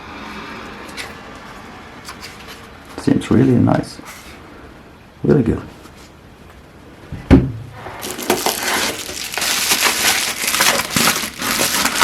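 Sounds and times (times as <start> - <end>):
packaging crinkling: 8.0 - 12.0.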